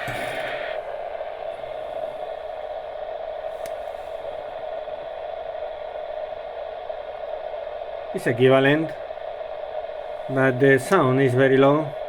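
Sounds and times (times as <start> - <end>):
radio static hiss: 0.0 - 12.0
faint click: 3.6 - 3.9.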